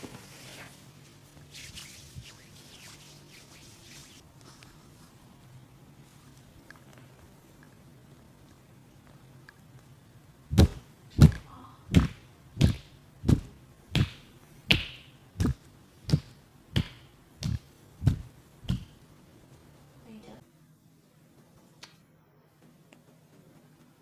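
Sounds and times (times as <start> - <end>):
hands slapping body: 10.5 - 19.0.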